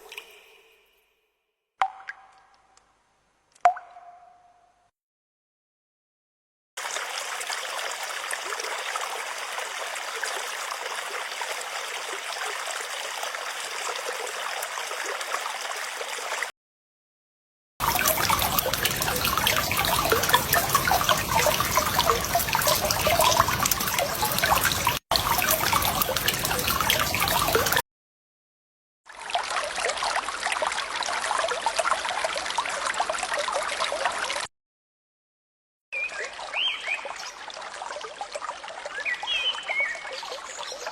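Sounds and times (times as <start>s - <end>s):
running water trickling: 0.0s - 0.8s, 6.8s - 16.5s, 17.8s - 27.8s, 36.0s - 40.9s.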